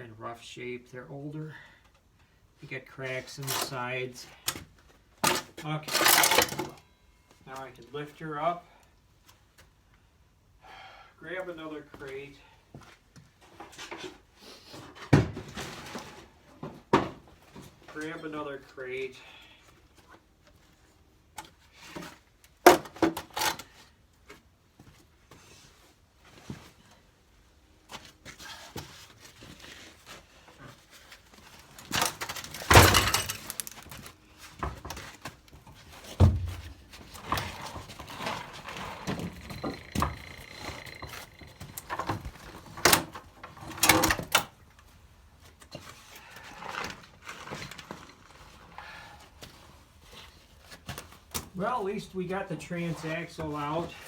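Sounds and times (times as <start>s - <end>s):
wooden crates being handled: 27.9s - 44.8s.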